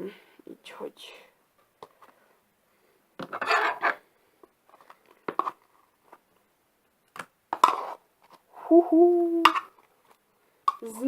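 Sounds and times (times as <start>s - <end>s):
slime scraping rustle: 7.6s - 8.5s.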